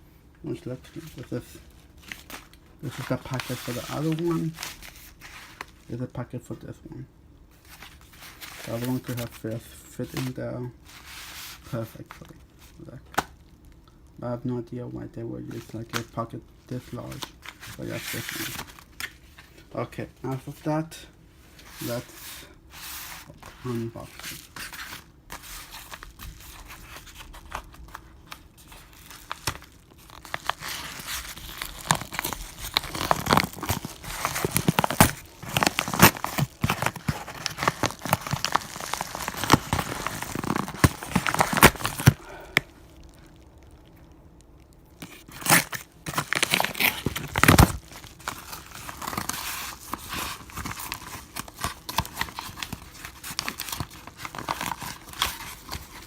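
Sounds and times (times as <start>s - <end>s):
packaging tearing and crinkling: 0.8s - 5.9s, 15.6s - 19.6s, 21.7s - 56.0s.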